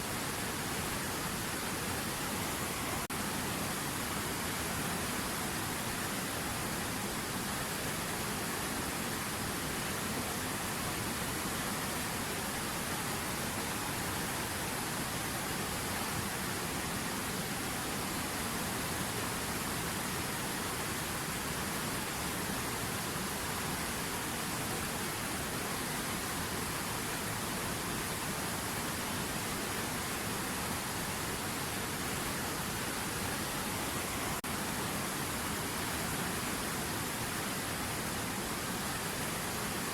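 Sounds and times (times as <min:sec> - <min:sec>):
river water running: 0:00.0 - 0:39.9.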